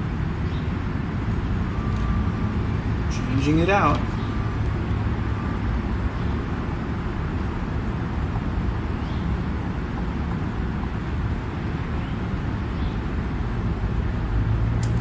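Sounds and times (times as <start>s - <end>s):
low rumbling background noise: 0.0s - 15.0s.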